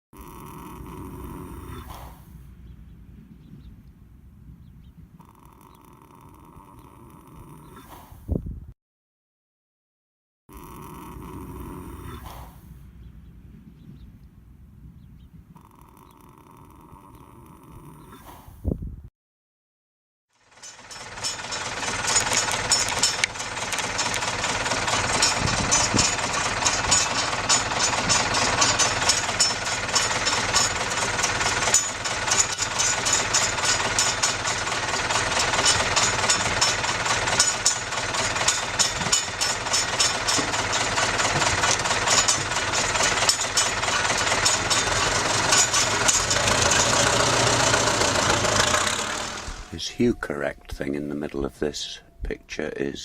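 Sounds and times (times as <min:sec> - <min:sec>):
pet snoring: 0:00.2 - 0:02.4, 0:05.2 - 0:08.3, 0:10.5 - 0:12.8, 0:15.6 - 0:18.6.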